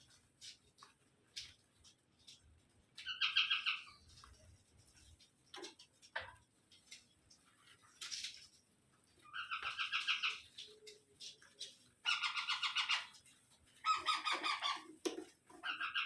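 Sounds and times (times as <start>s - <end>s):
parakeet chattering screeches: 13.8s - 14.9s.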